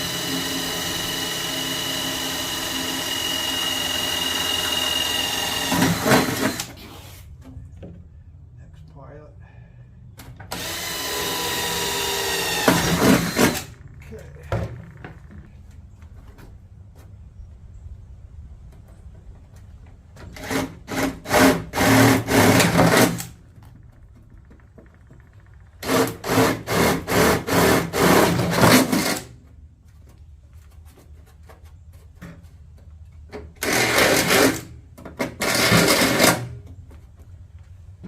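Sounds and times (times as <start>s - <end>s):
power drill drilling into metal: 0.0s - 6.8s, 10.5s - 13.7s, 33.6s - 34.7s, 35.4s - 36.4s.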